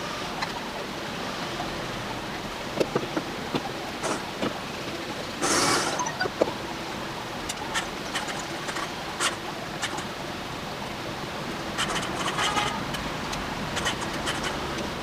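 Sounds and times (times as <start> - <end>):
steady hiss: 3.9 - 6.0
small clicks and scrapes: 7.5 - 10.1, 11.8 - 14.9.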